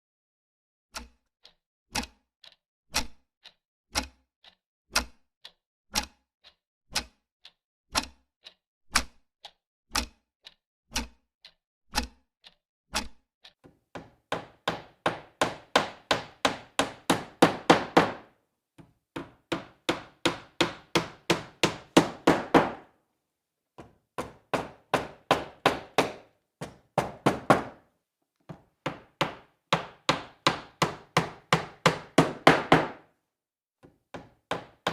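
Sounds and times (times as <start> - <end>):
hammer driving nail into wood: 13.9 - 18.3, 19.2 - 22.9, 23.8 - 27.9, 28.5 - 33.1, 33.8 - 34.9.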